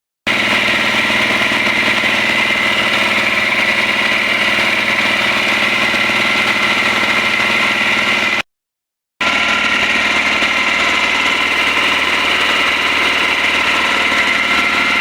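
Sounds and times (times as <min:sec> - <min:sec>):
air compressor running: 0:00.3 - 0:08.4, 0:09.2 - 0:15.0.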